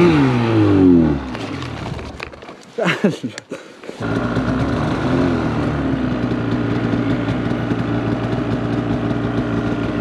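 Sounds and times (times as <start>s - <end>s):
snowmobile engine running: 4.0s - 10.0s.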